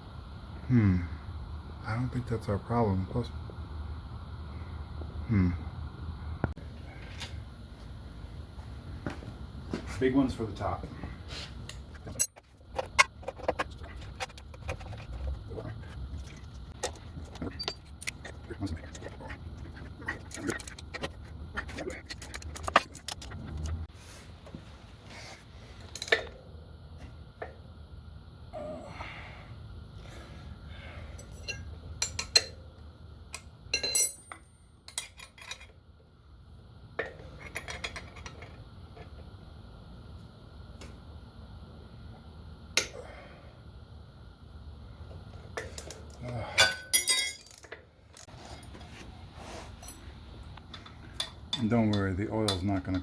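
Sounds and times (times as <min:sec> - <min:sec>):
low steady hum: 0:00.0 - 0:53.0
metal tools clinking and clattering: 0:16.2 - 0:19.1, 0:20.0 - 0:23.8, 0:33.8 - 0:35.7, 0:45.6 - 0:48.7
metallic clicks of tools and parts: 0:16.8 - 0:18.3, 0:21.7 - 0:23.8, 0:25.9 - 0:26.4.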